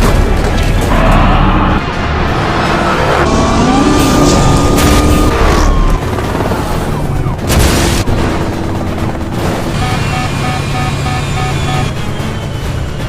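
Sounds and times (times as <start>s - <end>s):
dense vehicle noise: 0.0s - 13.0s
rapid repeating beeping tone: 9.7s - 12.0s.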